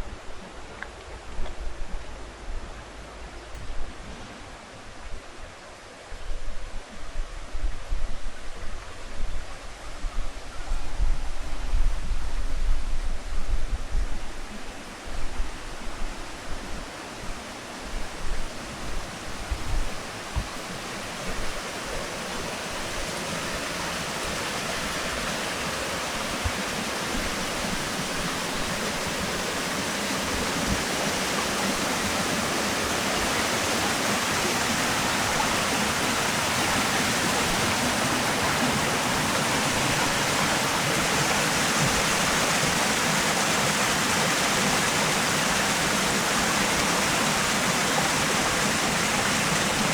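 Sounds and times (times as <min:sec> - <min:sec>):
stream rushing: 0:00.0 - 0:49.9.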